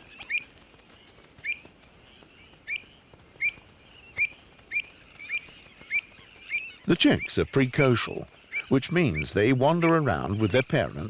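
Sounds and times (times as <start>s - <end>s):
bird high call notes: 2.7s - 11.0s.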